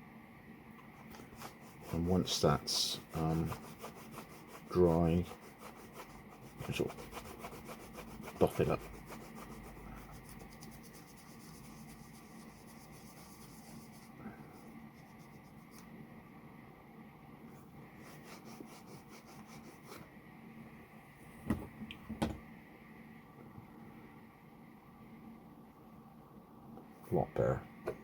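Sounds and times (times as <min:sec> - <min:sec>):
hand rubbing strokes: 0:01.1 - 0:15.9, 0:17.6 - 0:20.1.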